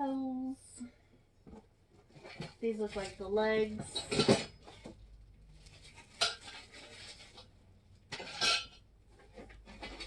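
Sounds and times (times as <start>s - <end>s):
metal grill parts clattering: 3.8s - 4.6s, 8.1s - 8.8s.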